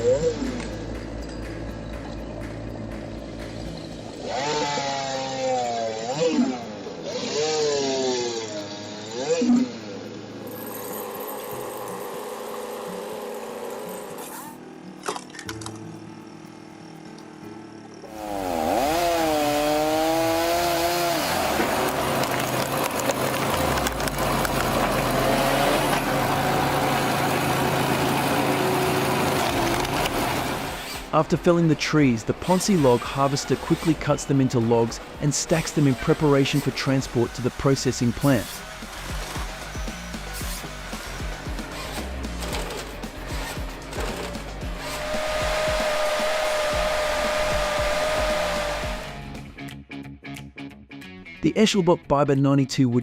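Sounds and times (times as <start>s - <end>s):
low engine hum: 0.0s - 4.8s, 21.4s - 31.0s, 38.6s - 49.4s
power saw cutting wood: 0.0s - 14.7s, 18.0s - 49.4s
chainsaw at high revs: 2.7s - 14.2s, 18.0s - 31.2s, 32.4s - 49.4s.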